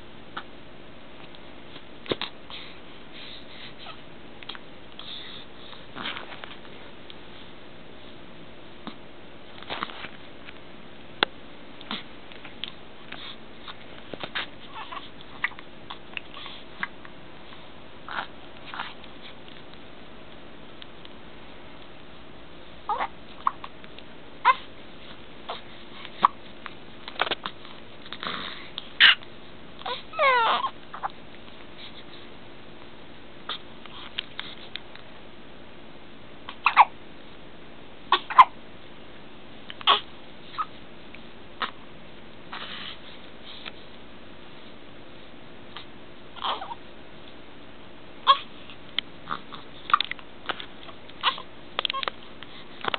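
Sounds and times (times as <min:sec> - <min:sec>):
steady background hum: 0:00.0 - 0:52.9
baby whimpering: 0:14.4 - 0:16.6, 0:18.1 - 0:19.0, 0:22.9 - 0:23.7, 0:24.4 - 0:24.7, 0:27.4 - 0:29.2, 0:29.8 - 0:31.2, 0:39.8 - 0:40.8, 0:46.4 - 0:46.8, 0:48.2 - 0:48.5, 0:51.2 - 0:52.2
baby hiccuping: 0:36.6 - 0:36.9, 0:38.1 - 0:38.6, 0:39.8 - 0:40.0.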